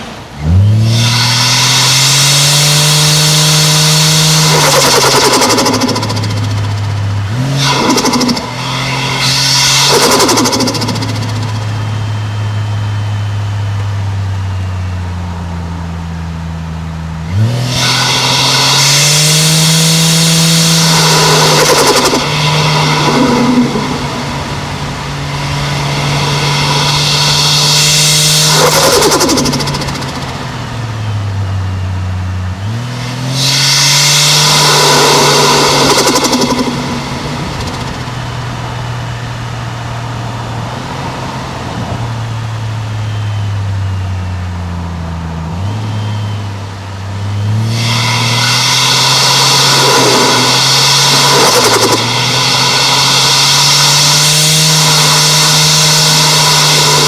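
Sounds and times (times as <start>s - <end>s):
turbo flutter chattering: 0.0s - 12.4s, 17.6s - 31.0s, 32.9s - 39.6s, 47.7s - 57.0s
car engine revving: 0.0s - 57.0s.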